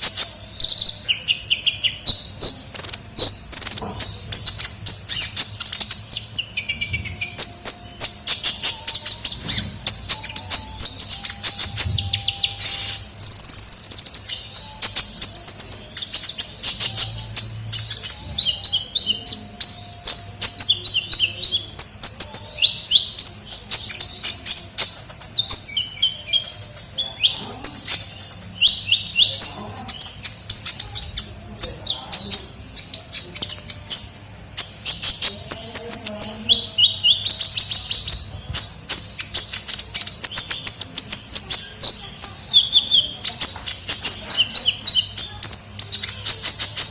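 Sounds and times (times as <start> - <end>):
bird chirping and trilling: 0.0 - 46.9.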